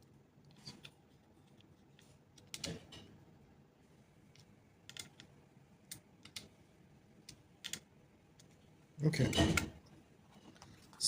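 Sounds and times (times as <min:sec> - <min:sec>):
small computer parts clicking: 0:04.3 - 0:05.3, 0:07.2 - 0:08.6.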